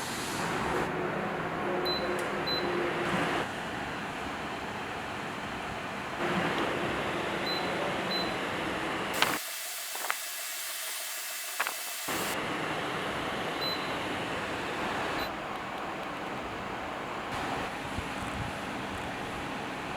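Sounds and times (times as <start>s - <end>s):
air cooler fan running: 0.0s - 19.9s.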